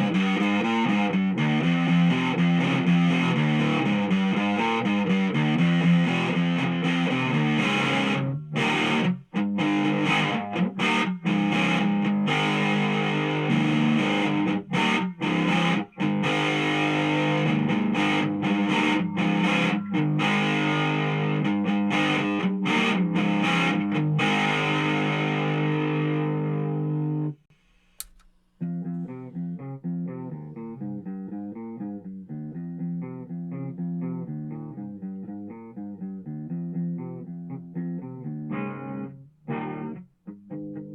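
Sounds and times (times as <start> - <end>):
distorted electric guitar chords: 0.0 - 27.2
single click: 27.5 - 29.2.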